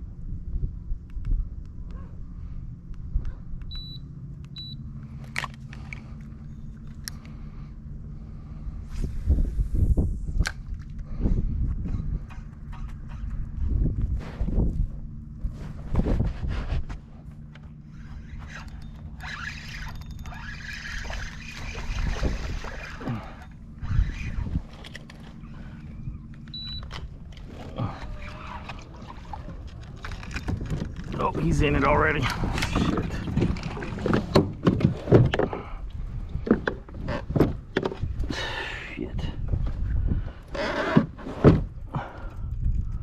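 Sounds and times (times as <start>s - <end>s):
steady low hum: 0.0s - 43.0s
electric motor humming: 17.0s - 34.6s
sharp rattles: 17.4s - 27.7s
gear knocking against hull: 18.5s - 38.3s.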